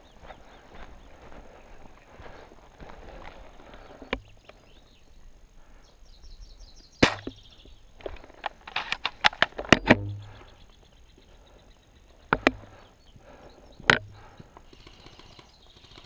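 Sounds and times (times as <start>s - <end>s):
airsoft gun shots: 7.0s - 7.4s.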